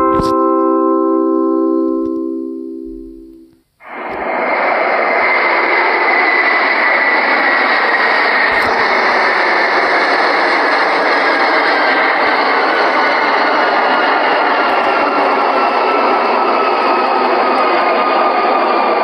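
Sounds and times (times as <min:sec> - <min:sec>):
bell-like chime: 0:00.0 - 0:03.5
faint high tone: 0:00.0 - 0:03.6
jet airliner cabin noise: 0:02.9 - 0:19.0.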